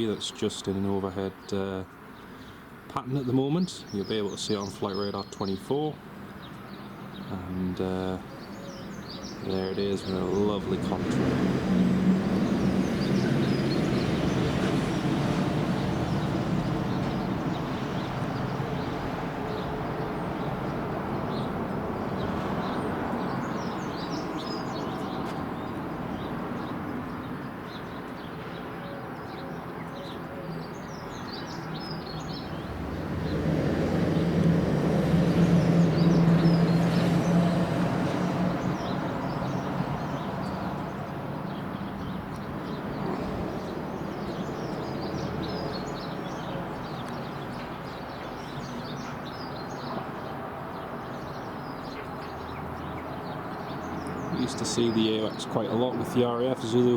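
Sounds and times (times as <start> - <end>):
small birds chirping: 0.0 - 56.9
distant jet drone: 8.9 - 27.2.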